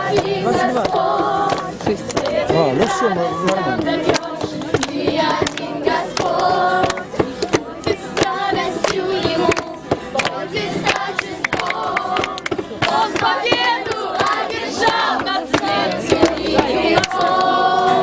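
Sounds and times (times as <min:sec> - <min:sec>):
group singing worship song: 0:00.0 - 0:18.0
sharp rhythmic beats: 0:00.0 - 0:18.0.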